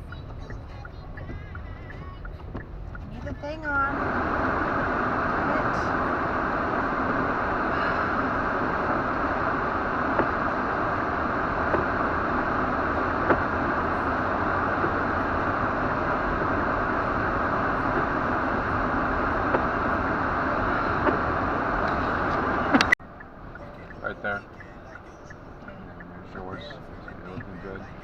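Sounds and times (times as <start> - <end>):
road and wind noise in car: 0.0 - 28.0
faint sharp ticks: 7.0 - 28.0.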